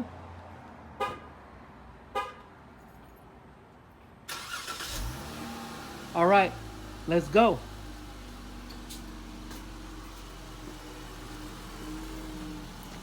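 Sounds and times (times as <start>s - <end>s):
car horn toots: 1.0s - 1.3s
car engine starting and idling: 4.3s - 13.0s.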